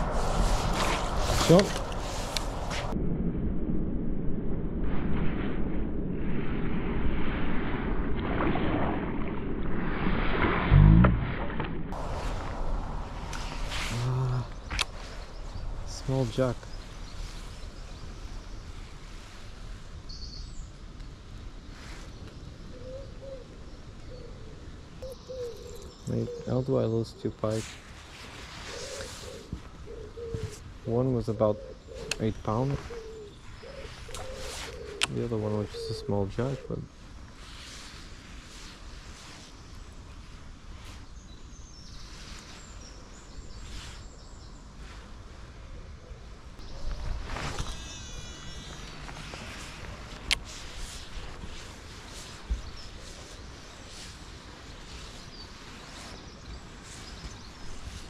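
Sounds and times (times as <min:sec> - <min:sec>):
steady low rumble: 0:00.0 - 0:22.8
wind rumbling on microphone: 0:00.0 - 0:26.6, 0:27.3 - 0:58.0
faint bird calls: 0:21.7 - 0:38.0, 0:40.8 - 0:58.0
high bird chirp: 0:46.6 - 0:49.9.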